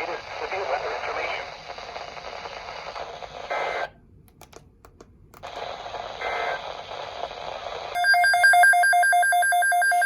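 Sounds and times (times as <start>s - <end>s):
radio static hiss: 0.0s - 4.0s, 5.4s - 8.0s.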